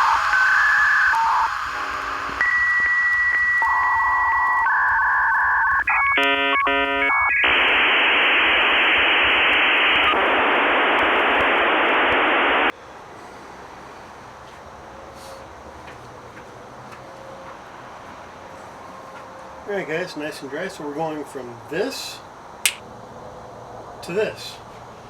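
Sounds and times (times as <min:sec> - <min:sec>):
dial-up modem tones: 0:00.0 - 0:12.7
modem hiss: 0:00.0 - 0:12.7.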